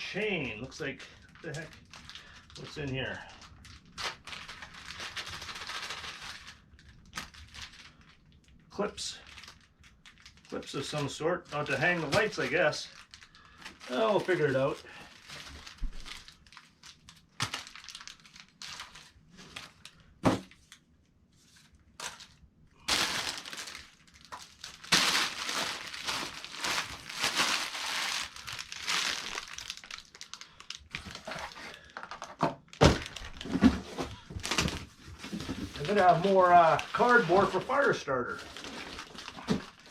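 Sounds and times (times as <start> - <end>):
cardboard rustling: 22.9 - 30.2, 32.8 - 39.9.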